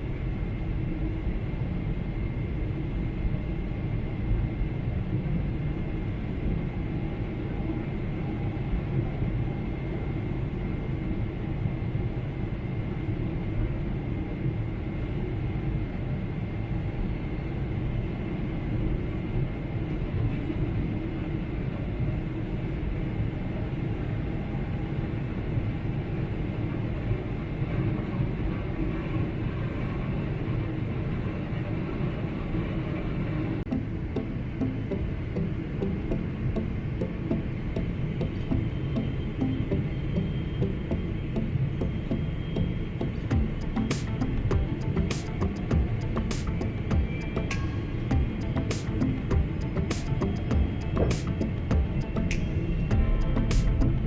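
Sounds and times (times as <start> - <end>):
jet engine and airflow rumble: 0.0 - 54.0
faint steady high tone: 33.7 - 54.0.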